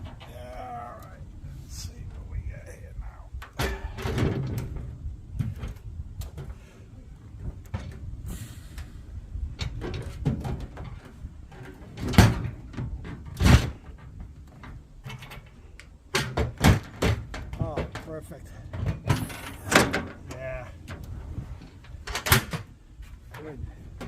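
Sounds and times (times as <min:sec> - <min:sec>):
metal box knocks and clunks: 0:03.6 - 0:05.7, 0:09.6 - 0:15.4, 0:16.2 - 0:21.0.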